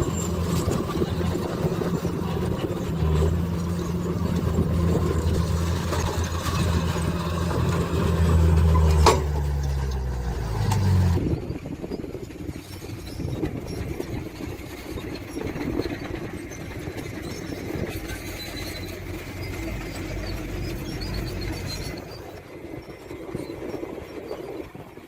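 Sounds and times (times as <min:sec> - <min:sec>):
diesel engine of heavy machine: 0:00.0 - 0:25.0.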